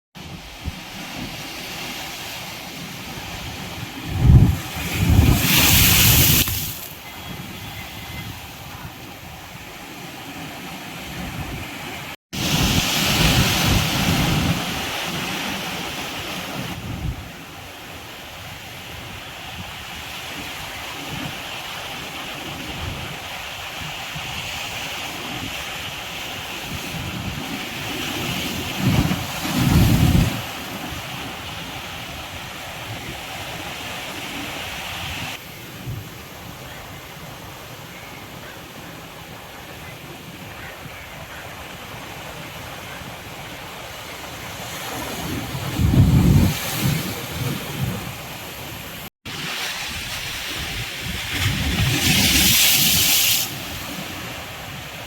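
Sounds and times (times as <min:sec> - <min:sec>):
wind buffeting microphone: 0:00.2 - 0:17.6, 0:43.2 - 0:55.0
sea waves breaking on beach: 0:00.2 - 0:55.0.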